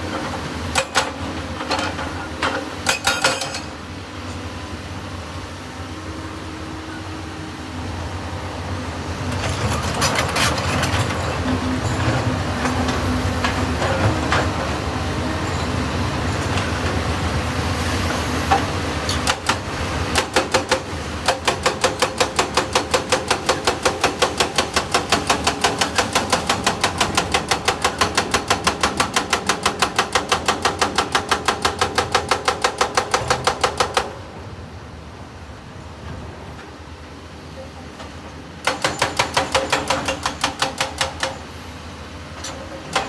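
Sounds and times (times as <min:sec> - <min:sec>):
excavator running: 0:00.0 - 0:34.7
sharp metallic knocks: 0:38.6 - 0:41.4.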